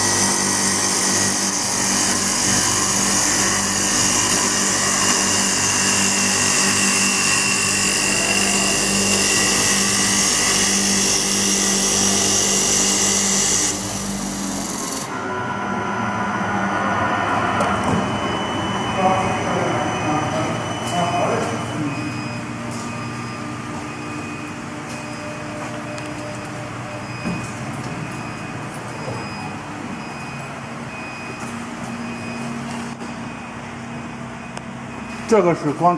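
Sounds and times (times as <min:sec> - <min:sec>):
lathe machine whine: 0:00.0 - 0:31.1
cutter hissing on wood: 0:01.1 - 0:15.1.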